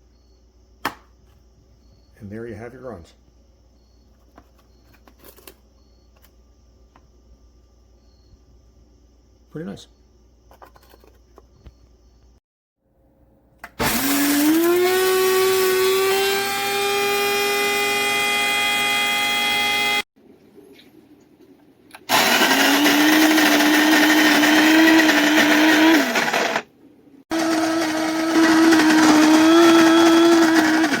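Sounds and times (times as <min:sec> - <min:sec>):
coffee grinder motor: 0:13.8 - 0:20.0, 0:22.1 - 0:26.7, 0:27.3 - 0:31.0.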